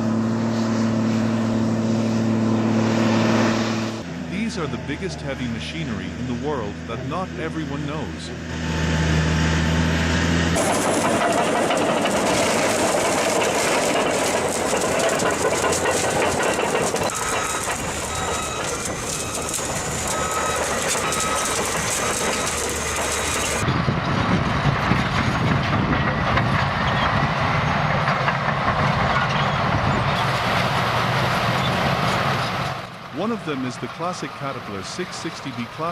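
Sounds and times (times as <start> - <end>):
diesel engines: 0.0 - 35.9
steel clanking: 10.6 - 23.6.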